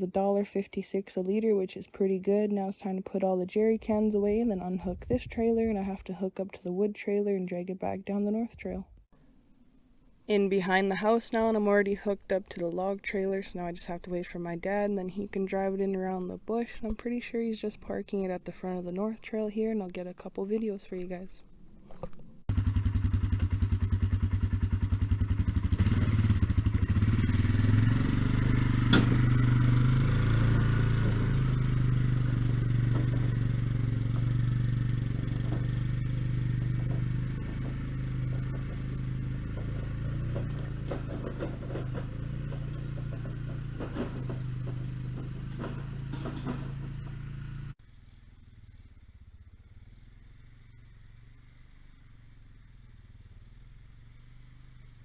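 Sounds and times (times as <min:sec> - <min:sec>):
quad engine running: 0:22.0 - 0:55.0
trailer knocks and rattles: 0:22.5 - 0:47.8.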